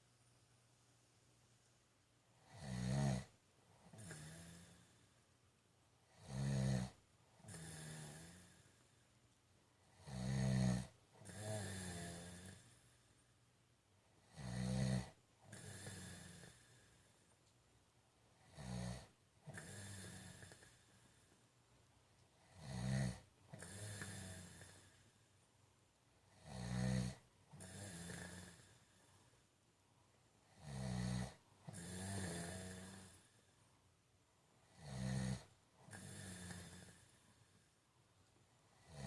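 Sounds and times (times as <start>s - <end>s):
man snoring: 2.4s - 5.1s, 6.1s - 8.9s, 9.9s - 13.1s, 14.2s - 17.2s, 18.4s - 21.2s, 22.4s - 25.0s, 26.3s - 29.0s, 30.5s - 33.4s, 34.6s - 37.5s, 38.7s - 39.0s.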